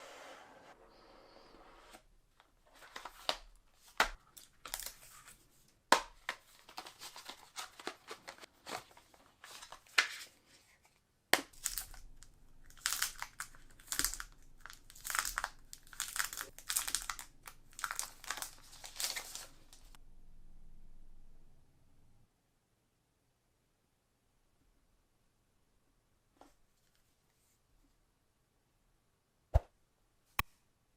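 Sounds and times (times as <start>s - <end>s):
packaging rustling and crinkling: 2.7s - 5.4s, 6.2s - 10.4s, 11.6s - 20.0s.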